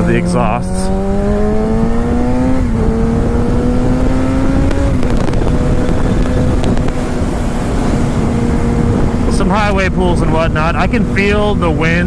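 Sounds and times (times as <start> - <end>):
motorcycle engine shifting up: 0.0 - 9.3
wind buffeting microphone: 0.0 - 12.0.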